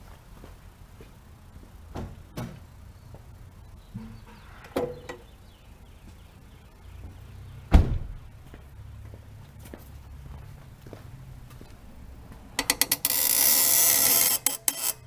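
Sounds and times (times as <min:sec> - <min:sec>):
heavy car door thump: 0:07.7 - 0:08.3.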